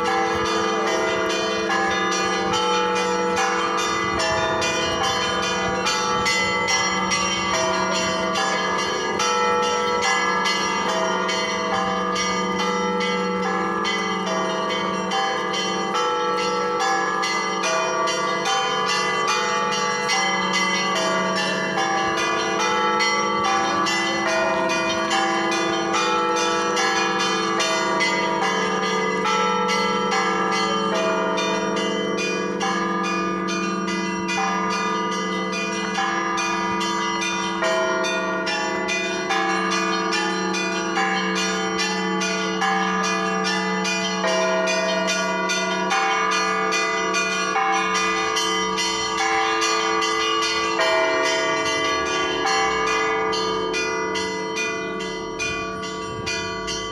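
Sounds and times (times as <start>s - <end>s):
large bell humming: 0.0s - 56.9s
small church bells pealing: 0.0s - 56.9s.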